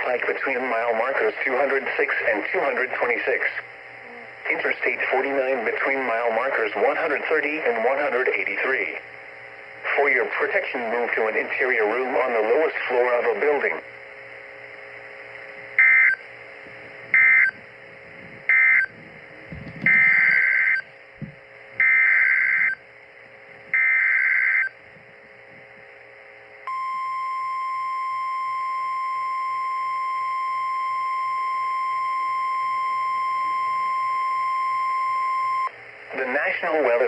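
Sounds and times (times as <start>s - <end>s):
warbling digital data tones: 17.1s - 17.6s, 19.8s - 20.9s
steady single-pitch alert tone: 19.9s - 20.9s, 26.7s - 35.7s.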